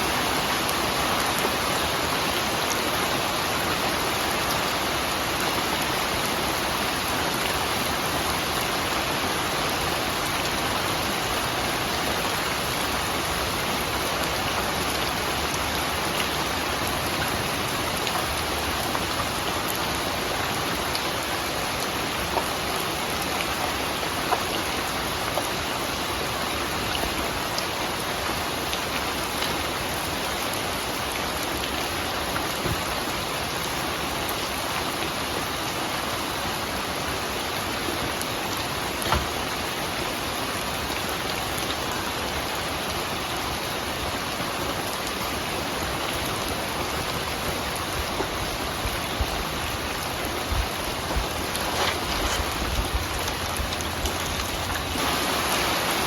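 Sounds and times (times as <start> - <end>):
heavy rain pattering: 0.0 - 56.0
sharp raindrops: 0.0 - 56.0.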